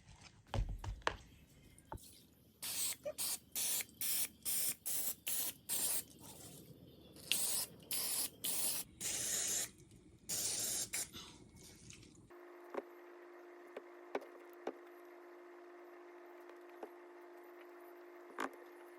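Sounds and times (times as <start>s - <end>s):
aerosol spray hissing bursts: 2.6s - 6.1s, 7.3s - 9.7s, 10.3s - 11.2s.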